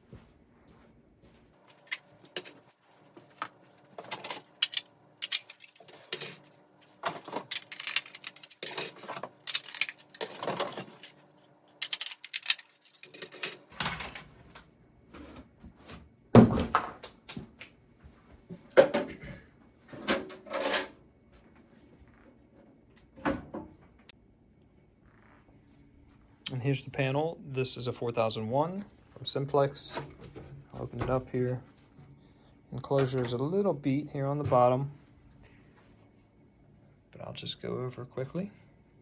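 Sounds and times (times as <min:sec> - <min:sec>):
plastic clicks and rattles: 0:04.0 - 0:06.4, 0:07.0 - 0:11.2, 0:11.8 - 0:13.6.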